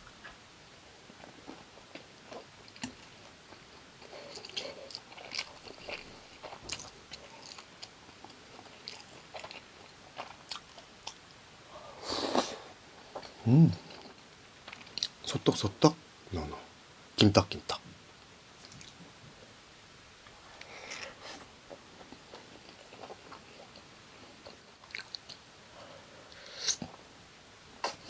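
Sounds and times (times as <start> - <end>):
crunchy chewing: 1.2 - 11.3, 22.0 - 25.4
person humming: 13.4 - 13.8.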